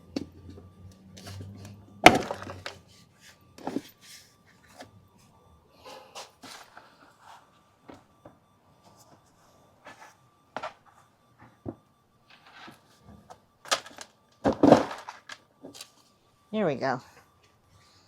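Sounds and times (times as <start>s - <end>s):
thumps: 2.0s - 2.8s.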